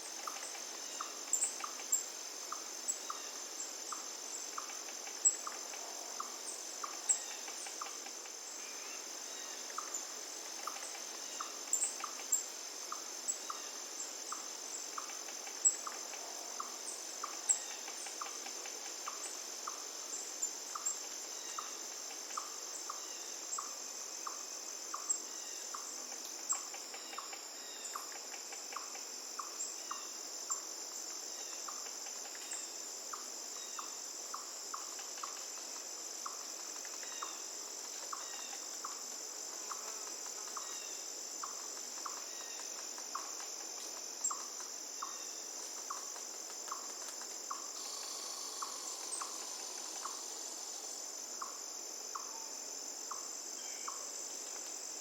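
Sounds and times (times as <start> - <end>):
faint hiss of running water: 0.0 - 55.0
insect chorus chirping: 0.0 - 55.0.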